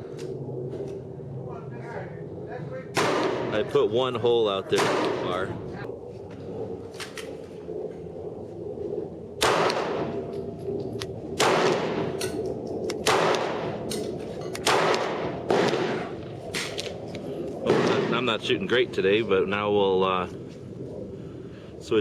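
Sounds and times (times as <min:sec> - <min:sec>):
pistol shots: 0:02.9 - 0:03.6, 0:04.7 - 0:05.4, 0:09.4 - 0:10.1, 0:11.4 - 0:12.4, 0:13.0 - 0:14.0, 0:14.6 - 0:16.8, 0:17.7 - 0:18.3.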